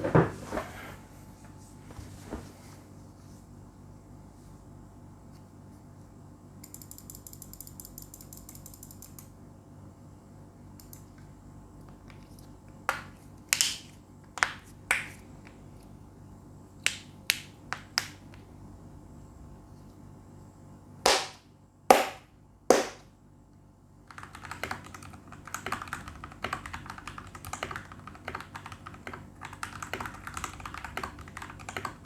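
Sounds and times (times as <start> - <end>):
fast keyboard ticks: 24.1 - 32.0.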